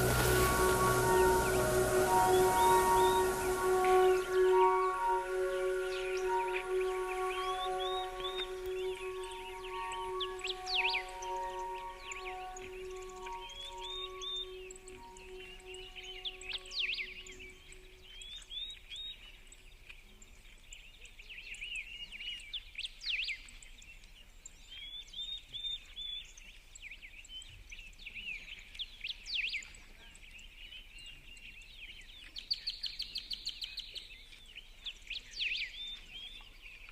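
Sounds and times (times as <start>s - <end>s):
bird trill: 0.0s - 18.1s.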